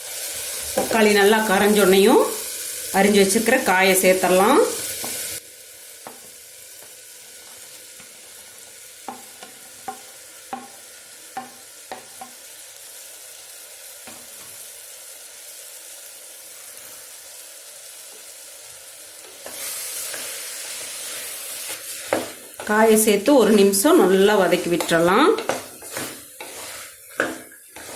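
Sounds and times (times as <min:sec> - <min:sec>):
vegetables sizzling in hot oil: 0:00.0 - 0:27.9.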